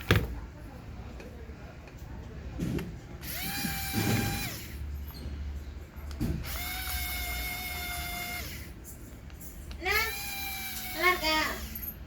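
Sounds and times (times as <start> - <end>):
small power tool motor whining: 3.2 - 4.8, 6.4 - 8.8, 9.9 - 11.9.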